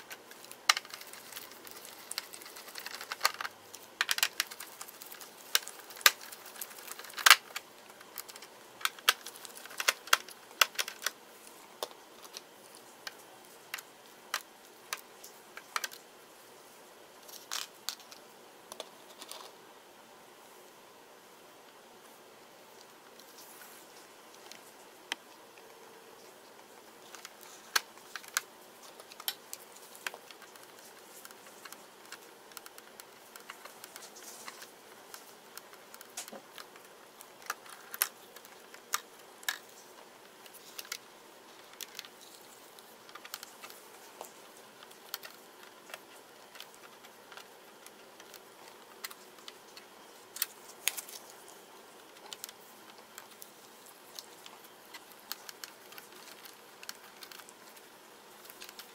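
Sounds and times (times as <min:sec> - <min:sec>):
laptop parts clicking and tapping: 0:00.0 - 0:11.2, 0:27.0 - 0:51.3, 0:52.0 - 0:58.9
faint steady hiss: 0:00.0 - 0:58.9.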